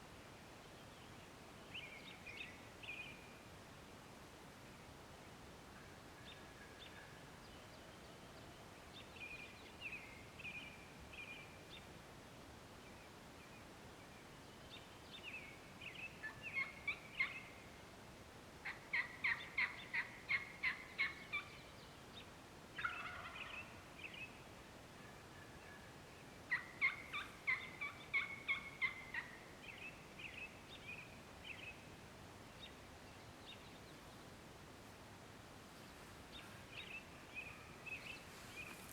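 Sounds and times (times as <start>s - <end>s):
turkey calling: 18.6s - 21.5s, 22.8s - 23.7s, 26.5s - 29.4s.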